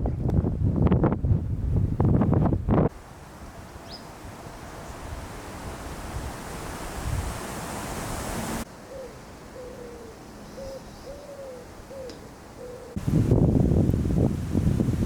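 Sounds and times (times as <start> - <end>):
wind buffeting microphone: 0.0 - 3.0, 4.2 - 8.6, 12.9 - 15.0.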